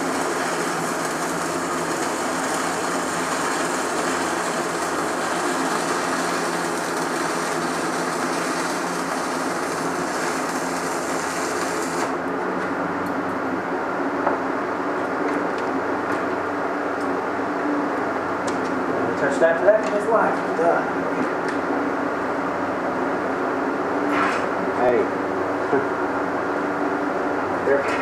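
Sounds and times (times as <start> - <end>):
welding arc crackling sizzle: 0.0 - 12.7.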